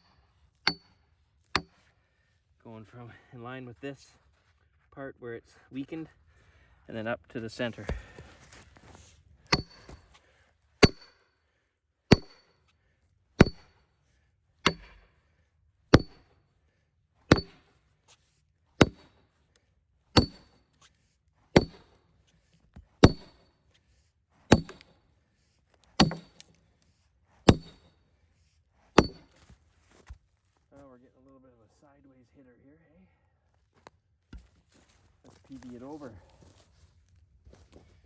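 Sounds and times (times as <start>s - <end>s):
hammer striking metal wedge: 0.7s - 1.0s, 1.6s - 1.8s, 9.5s - 10.0s, 10.8s - 11.2s, 12.1s - 12.5s, 13.4s - 13.7s, 14.7s - 15.0s, 15.9s - 16.3s, 17.3s - 17.7s, 18.8s - 19.2s, 20.2s - 20.6s, 21.6s - 22.0s, 23.0s - 23.4s, 24.5s - 24.9s, 26.0s - 26.5s, 27.5s - 27.9s, 29.0s - 29.4s.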